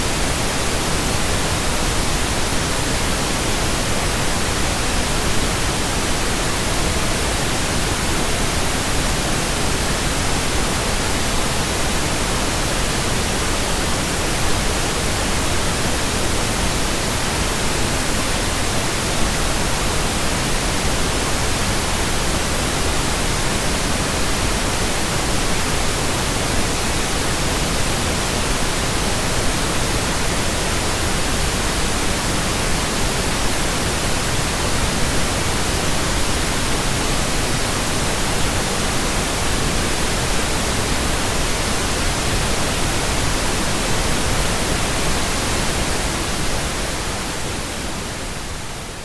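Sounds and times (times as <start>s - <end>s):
pink noise hiss: 0.0s - 49.0s.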